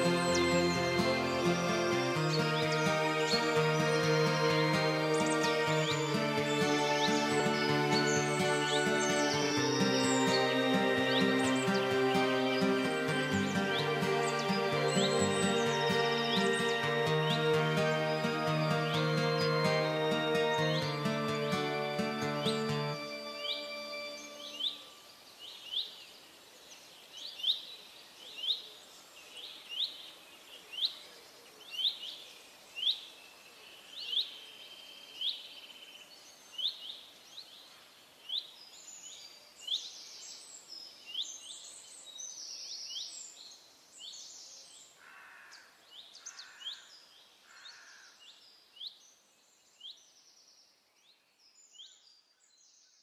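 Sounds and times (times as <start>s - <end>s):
rising bird chirp: 0.0s - 25.1s
high busy bird calls: 0.0s - 26.0s.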